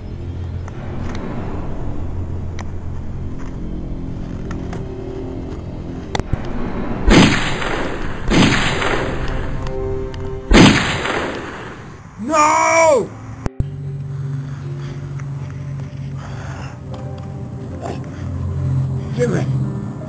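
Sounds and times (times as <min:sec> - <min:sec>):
dramatic trailer music: 0:00.0 - 0:11.8
low steady drone: 0:00.0 - 0:12.3, 0:13.1 - 0:20.0
loud booms: 0:07.0 - 0:09.2.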